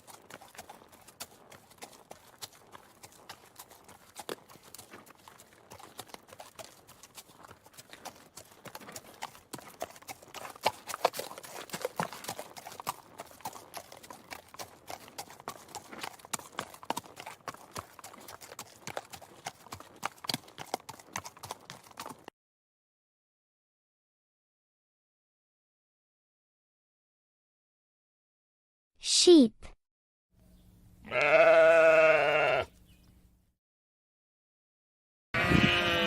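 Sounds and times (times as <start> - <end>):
horse hooves clip-clopping: 0.0 - 22.3.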